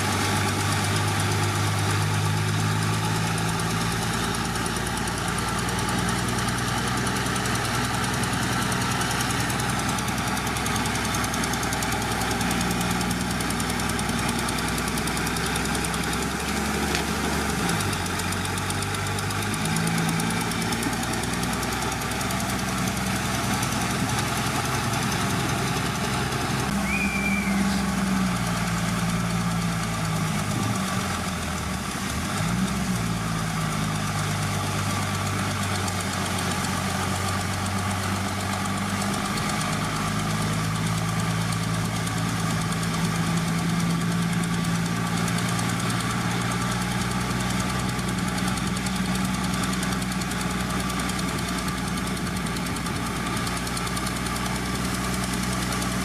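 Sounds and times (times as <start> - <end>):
diesel engine running: 0.0 - 56.0
short high squeal: 26.7 - 28.0.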